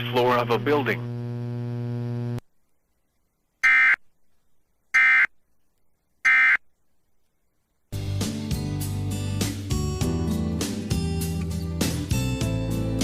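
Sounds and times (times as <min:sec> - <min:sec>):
electrical buzz: 0:00.4 - 0:02.4.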